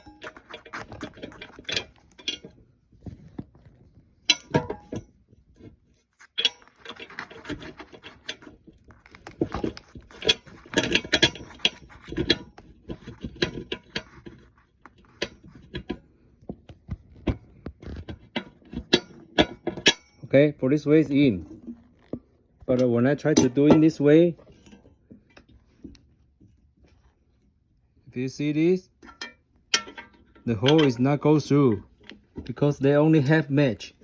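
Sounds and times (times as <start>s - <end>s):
screw scraping and clicking on plate: 0.0s - 20.2s.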